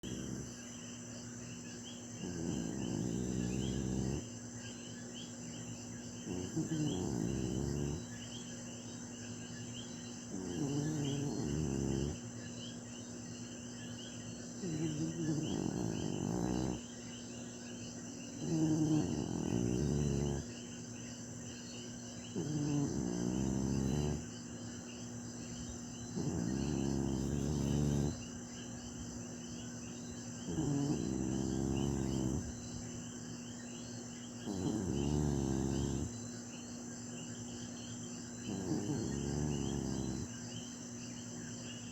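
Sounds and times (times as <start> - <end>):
person snoring: 0.0 - 0.5, 2.2 - 4.2, 6.3 - 8.1, 10.3 - 12.2, 14.6 - 16.8, 18.4 - 20.5, 22.4 - 24.3, 26.2 - 28.2, 30.5 - 32.5, 34.5 - 36.1, 38.5 - 40.3
crickets chirping: 0.0 - 41.9.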